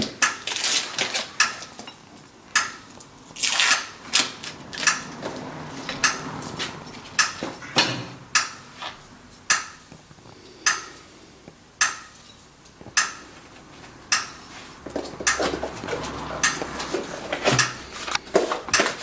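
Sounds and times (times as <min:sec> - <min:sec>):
ringing metallic knocks: 0:05.8 - 0:08.7.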